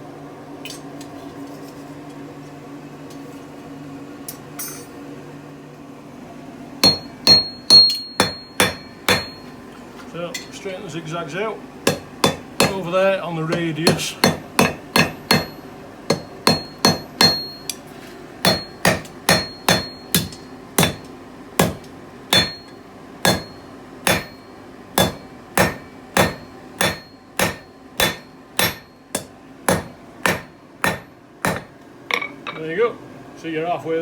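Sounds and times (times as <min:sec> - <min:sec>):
high ring from anvil: 0:06.8 - 0:09.5, 0:14.2 - 0:17.8, 0:18.5 - 0:21.0, 0:21.7 - 0:32.6
hammer striking steel on anvil: 0:06.8 - 0:09.6, 0:11.9 - 0:12.9, 0:13.5 - 0:17.8, 0:18.4 - 0:32.6.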